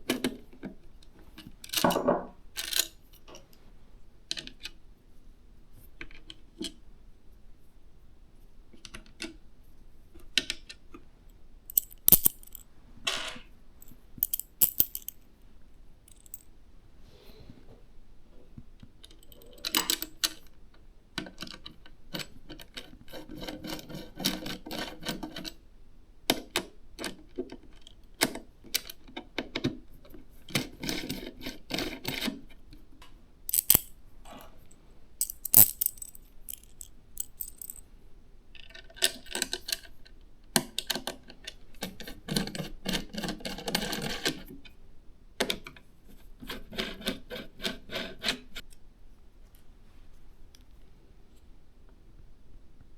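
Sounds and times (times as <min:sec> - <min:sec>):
rustling and scraping: 0:11.7 - 0:15.2, 0:16.1 - 0:17.8, 0:33.5 - 0:37.8.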